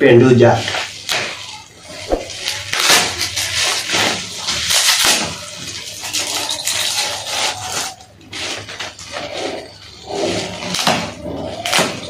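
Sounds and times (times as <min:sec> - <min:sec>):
packing tape ripping: 0:00.6 - 0:09.6.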